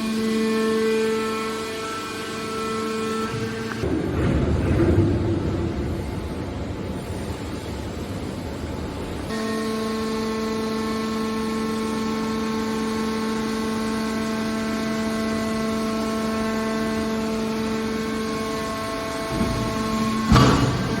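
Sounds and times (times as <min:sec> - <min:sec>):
pump motor humming with whine: 0:00.0 - 0:04.2, 0:09.3 - 0:21.0.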